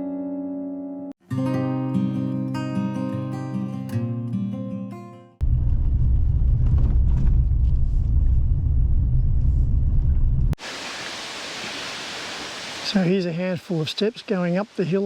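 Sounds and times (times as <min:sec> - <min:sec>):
steady low rumble: 0:05.4 - 0:10.6
hiss of rushing water: 0:10.6 - 0:15.0.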